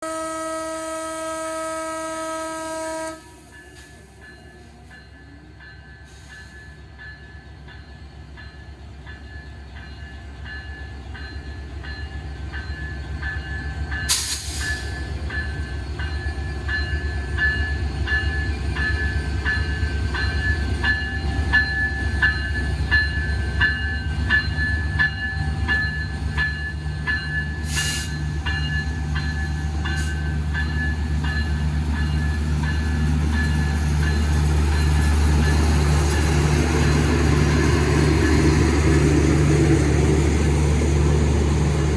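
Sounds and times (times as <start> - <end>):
locomotive horn blast: 0.0 - 3.5
locomotive bell ringing: 3.5 - 40.5.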